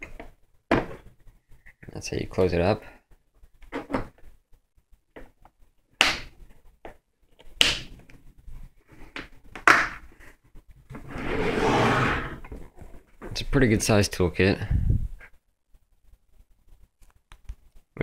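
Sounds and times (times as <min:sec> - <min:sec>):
scraping noise: 0:11.0 - 0:12.5.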